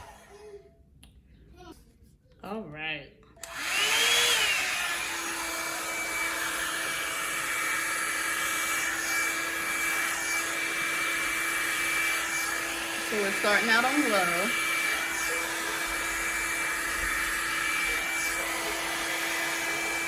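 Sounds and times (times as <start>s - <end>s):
hair dryer running: 0.0s - 0.6s, 3.4s - 20.0s.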